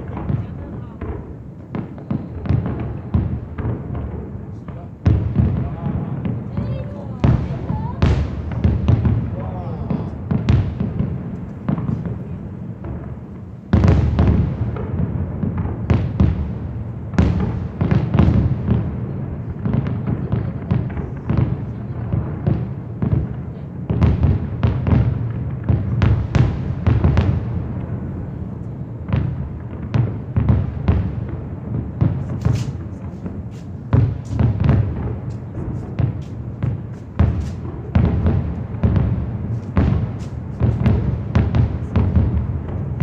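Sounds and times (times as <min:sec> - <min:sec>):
firework shell bursts and bangs: 0:00.0 - 0:18.9, 0:31.8 - 0:43.0
continuous low rumble: 0:00.0 - 0:43.0.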